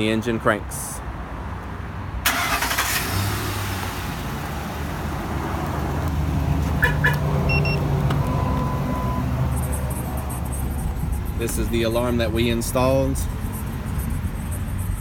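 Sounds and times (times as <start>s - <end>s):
truck engine idling: 2.3s - 15.0s
short high beeps: 7.5s - 10.6s.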